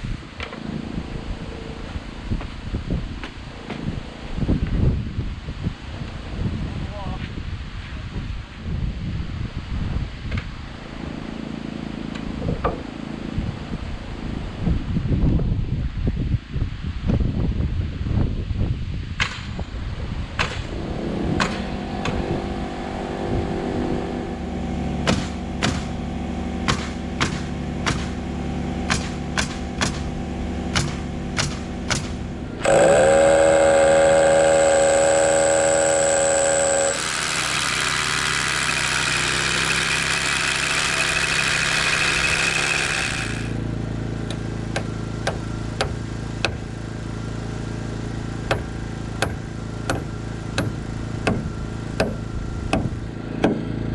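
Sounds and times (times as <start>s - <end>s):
engine-like hum: 20.8s - 53.9s
nail gun shots: 25.1s - 25.9s, 26.7s - 28.2s, 28.9s - 30.1s, 30.8s - 43.6s
power tool whine: 32.3s - 43.8s.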